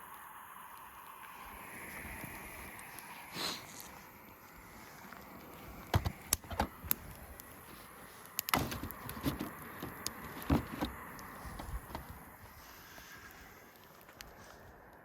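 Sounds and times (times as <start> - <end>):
camp gear clicks and knocks: 5.2 - 12.6.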